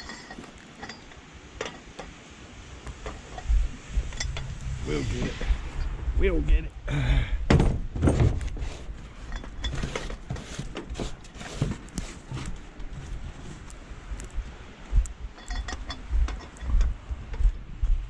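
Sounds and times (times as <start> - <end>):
metal tools clinking and knocking: 0.0 - 2.2, 9.2 - 11.7, 15.4 - 16.7
low rumble: 2.6 - 9.7, 13.8 - 18.0.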